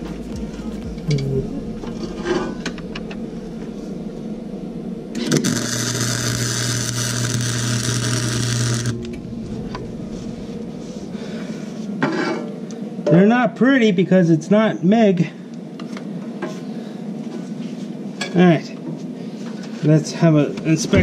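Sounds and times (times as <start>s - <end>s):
welder crackling hiss: 5.2s - 9.1s.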